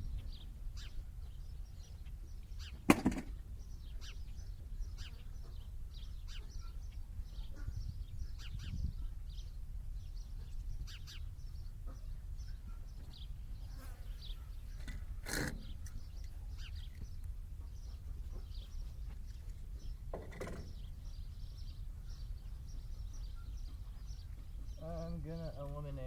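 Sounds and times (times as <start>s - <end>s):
small birds chirping: 0.0s - 26.0s
sharp knock: 2.9s - 3.3s.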